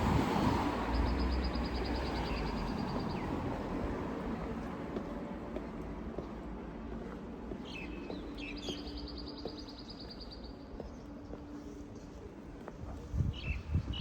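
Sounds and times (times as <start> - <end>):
faint city hum: 0.0 - 14.0
songbirds chirping: 7.3 - 14.0.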